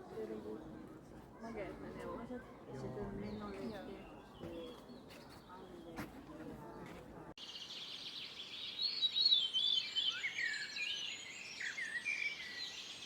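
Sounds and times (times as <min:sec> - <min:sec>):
songbirds singing: 0:06.7 - 0:13.0.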